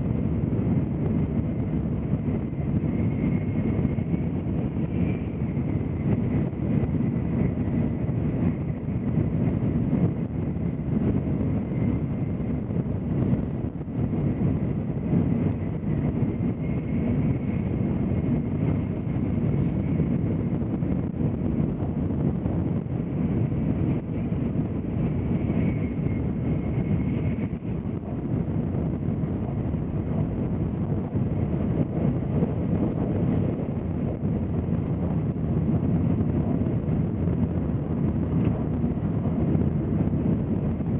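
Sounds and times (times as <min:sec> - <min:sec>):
train rumbling at speed: 0:00.0 - 0:40.9
faint high whine: 0:23.4 - 0:31.0.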